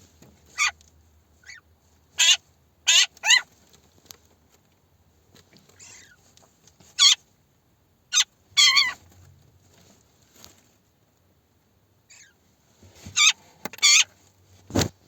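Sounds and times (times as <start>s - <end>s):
magpies calling harshly: 0.6s - 0.8s, 1.4s - 1.6s, 2.2s - 3.5s, 5.8s - 6.2s, 7.0s - 7.2s, 8.1s - 9.0s, 12.1s - 12.4s, 13.2s - 14.1s.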